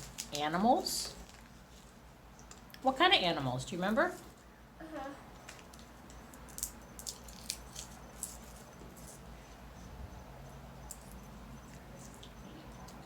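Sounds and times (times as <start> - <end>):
low steady hum: 0.0 - 13.0
peanut shells cracking: 5.5 - 9.2.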